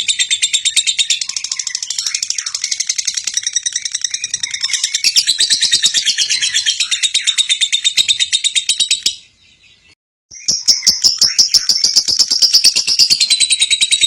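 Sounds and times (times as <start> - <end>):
lovebird chattering: 10.3 - 14.0.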